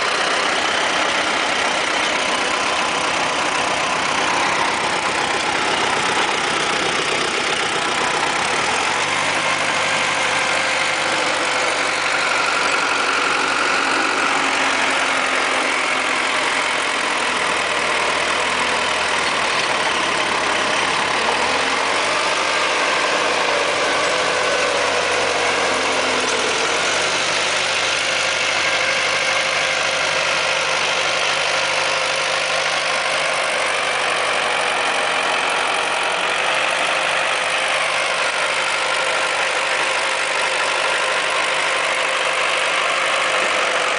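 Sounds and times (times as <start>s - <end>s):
tractor engine tilling soil: 0.0s - 43.9s.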